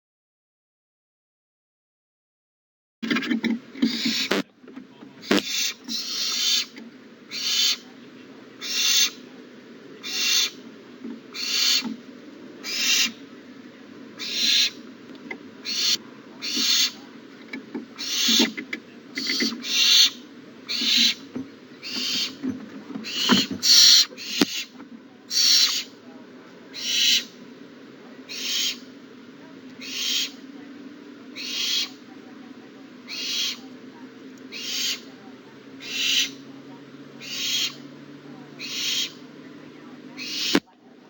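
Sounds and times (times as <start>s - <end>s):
owlets hissing screech calls: 3.8s - 4.4s, 5.2s - 7.9s, 8.5s - 9.3s, 10.0s - 10.7s, 11.3s - 13.4s, 14.1s - 14.9s, 15.6s - 17.3s, 17.9s - 22.4s, 23.0s - 26.0s, 26.7s - 27.4s, 28.3s - 29.0s, 29.8s - 30.5s, 31.3s - 32.2s, 33.0s - 33.7s, 34.4s - 35.2s, 35.8s - 38.0s, 38.6s - 39.3s, 40.2s - 40.6s.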